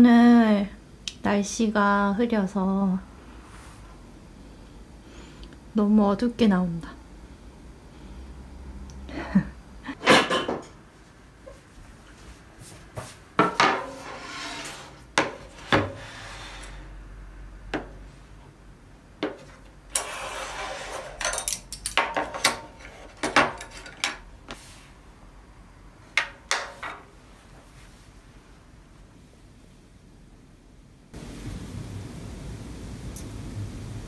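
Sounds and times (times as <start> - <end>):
dishes and utensils clinking: 9.9 - 10.8, 21.0 - 24.2
dishes scraping and rubbing: 13.4 - 16.9, 19.2 - 24.2.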